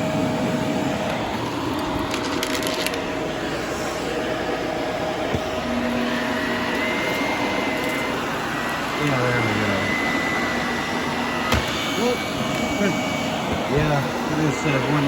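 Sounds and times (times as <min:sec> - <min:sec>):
high whine: 0:00.0 - 0:15.0
vacuum cleaner running: 0:00.0 - 0:15.0
debris rattling through vacuum: 0:01.1 - 0:03.8.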